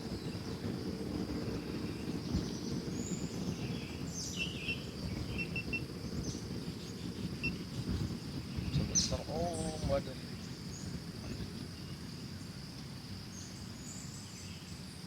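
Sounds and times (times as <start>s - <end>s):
low background rumble: 0.0s - 15.0s
birds chirping: 1.4s - 12.6s
high-pitched insect drone: 3.0s - 14.1s.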